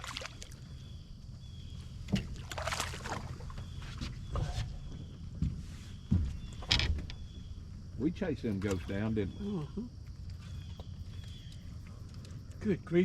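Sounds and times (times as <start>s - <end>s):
knocks and clatter in a boat: 1.3s - 9.1s.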